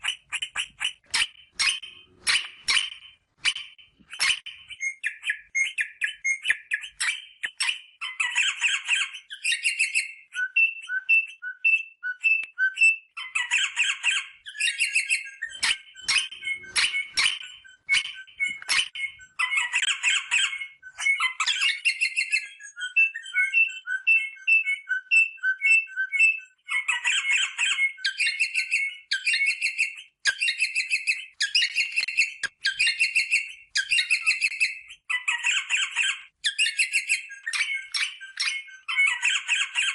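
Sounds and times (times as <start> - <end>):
parrot whistled notes: 8.3 - 39.9.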